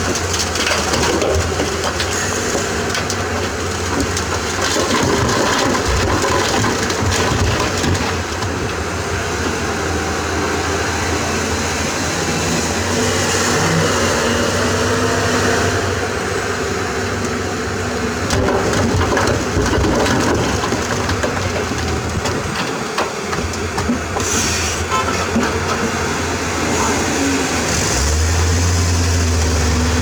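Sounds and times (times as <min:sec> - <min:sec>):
knocks and rattles: 0:00.0 - 0:09.3, 0:18.2 - 0:26.5
excavator diesel engine running: 0:00.0 - 0:30.0.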